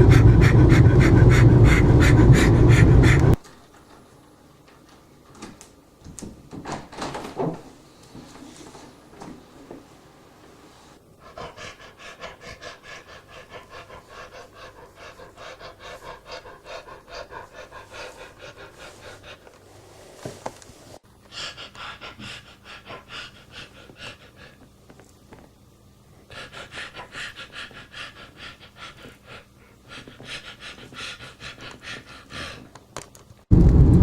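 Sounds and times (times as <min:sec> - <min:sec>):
person panting heavily: 0:00.0 - 0:03.4, 0:11.2 - 0:19.5, 0:21.3 - 0:24.6, 0:26.2 - 0:32.8.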